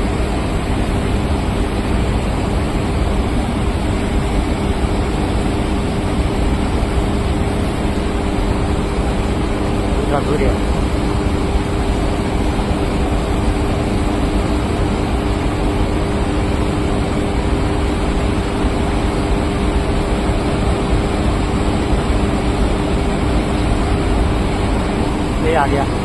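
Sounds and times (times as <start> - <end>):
steady low hum: 0.0 - 26.0.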